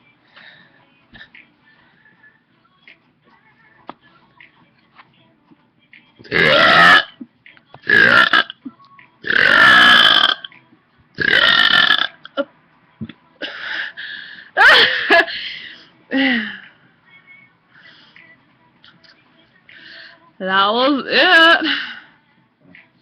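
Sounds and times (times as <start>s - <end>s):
person burping: 6.3s - 7.2s, 7.9s - 8.6s, 9.2s - 10.5s, 11.2s - 12.4s.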